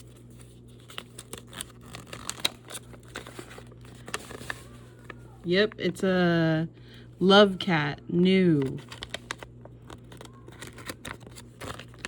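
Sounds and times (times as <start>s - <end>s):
plastic packaging crinkling: 0.0s - 5.9s, 8.6s - 12.0s.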